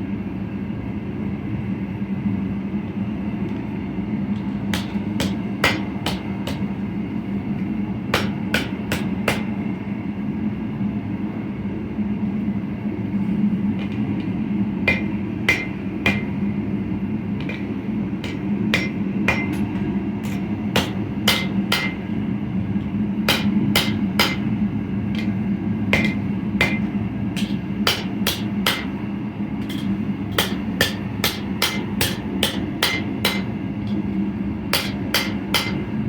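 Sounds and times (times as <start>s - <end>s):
steady low hum: 0.0s - 36.0s
hammer striking steel on anvil: 4.7s - 6.8s, 8.1s - 9.7s, 14.8s - 16.4s, 17.4s - 22.2s, 23.3s - 35.9s.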